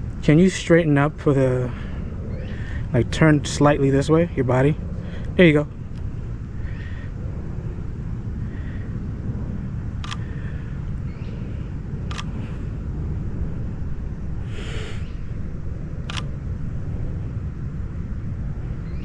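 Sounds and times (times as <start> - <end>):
low background rumble: 0.0 - 19.0
camera shutter clicking: 10.0 - 10.2, 12.1 - 12.3, 16.0 - 16.3.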